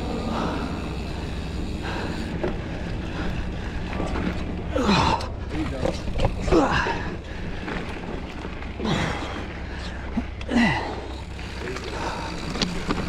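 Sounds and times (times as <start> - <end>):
person breathing hard: 0.0 - 5.5
low rumble of riding: 0.0 - 13.0.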